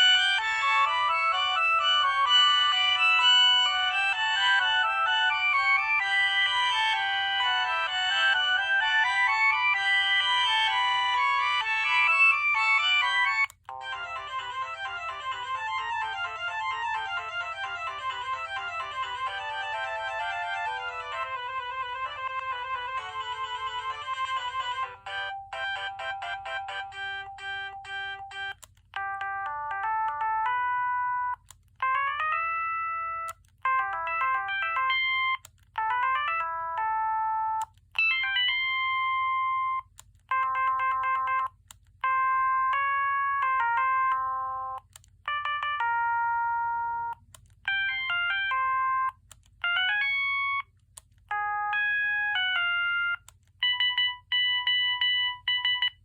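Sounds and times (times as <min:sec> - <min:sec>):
mobile phone ringtone melodies: 0:00.0 - 0:56.0
phone beeps: 0:32.2 - 0:56.0.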